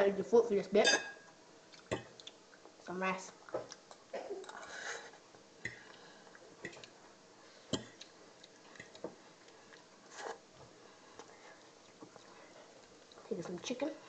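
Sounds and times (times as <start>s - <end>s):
chewing: 1.6s - 13.3s.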